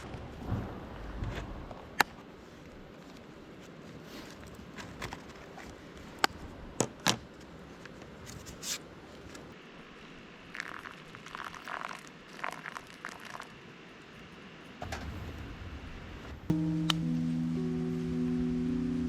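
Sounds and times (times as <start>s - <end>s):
crinkling and rustling: 3.0s - 6.2s.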